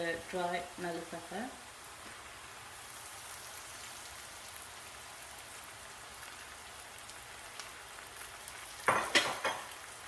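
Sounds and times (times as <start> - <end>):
onions sizzling in oil: 0.0 - 10.0
small crackles: 1.8 - 8.9.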